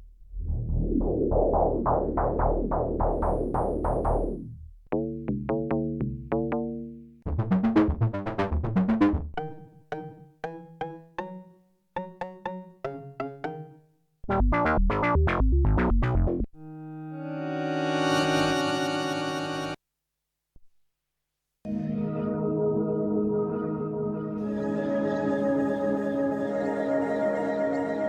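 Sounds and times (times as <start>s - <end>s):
plucked synthesizer notes: 0.0s - 19.8s
pulsing synthesizer sequence: 0.3s - 4.5s, 14.3s - 19.8s.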